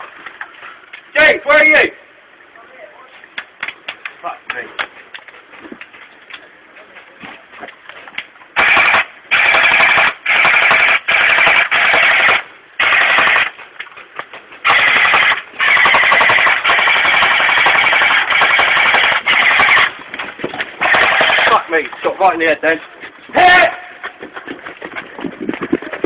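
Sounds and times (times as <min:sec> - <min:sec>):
airsoft rifle firing bursts: 0:08.6 - 0:13.6, 0:14.6 - 0:20.0, 0:20.8 - 0:21.7.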